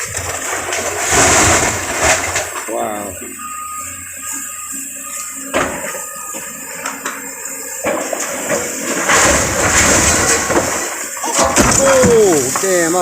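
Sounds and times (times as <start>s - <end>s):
falling masonry and debris crashing: 0.0s - 2.8s, 6.8s - 13.0s.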